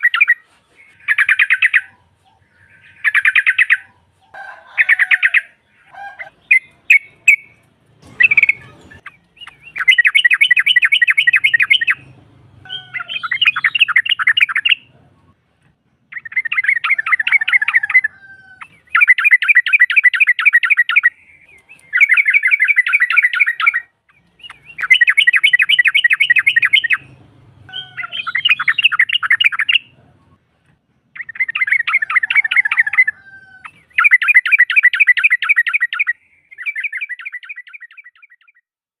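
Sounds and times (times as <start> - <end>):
bird chattering in trilled bursts: 4.9 - 14.9, 16.1 - 21.2, 21.8 - 30.4.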